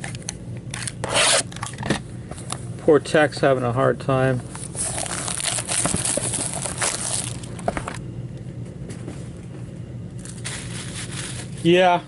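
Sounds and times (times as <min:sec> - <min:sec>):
low steady hum: 0:00.0 - 0:12.0
wrappers crinkling: 0:04.5 - 0:08.0, 0:10.2 - 0:11.8.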